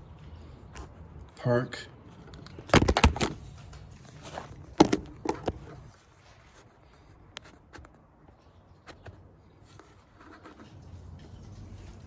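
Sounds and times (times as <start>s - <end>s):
phone handling knocks and scrapes: 2.5s - 3.4s, 4.2s - 5.9s.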